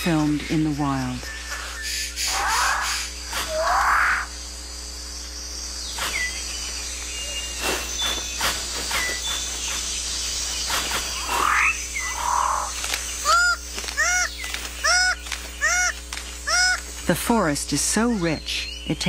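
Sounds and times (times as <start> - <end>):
insect and frog chorus: 0.0 - 19.0
buzzy animal call: 2.2 - 4.4, 11.1 - 17.0
whistled bird notes: 5.3 - 17.3.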